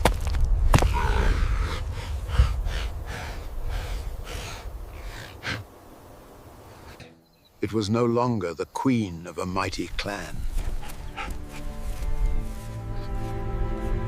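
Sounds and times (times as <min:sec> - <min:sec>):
animal heavy rhythmic breathing: 0:01.0 - 0:05.7, 0:10.0 - 0:12.6.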